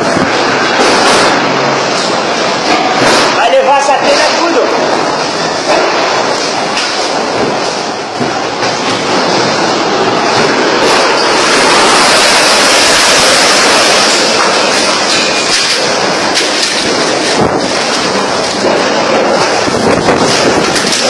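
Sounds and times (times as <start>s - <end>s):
heavy rain: 0.0s - 21.0s
violent storm wind: 0.0s - 21.0s.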